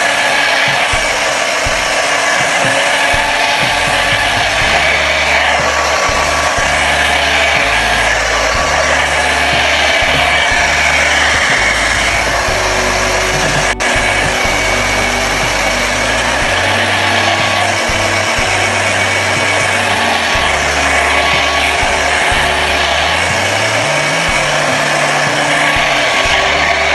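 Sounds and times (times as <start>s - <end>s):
background music: 0.0s - 26.9s
hair dryer blowing: 0.0s - 26.9s.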